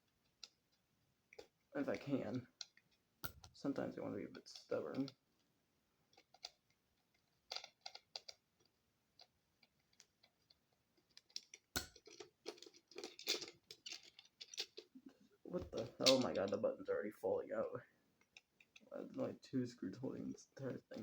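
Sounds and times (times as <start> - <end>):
plastic parts rattling: 6.1 - 16.6.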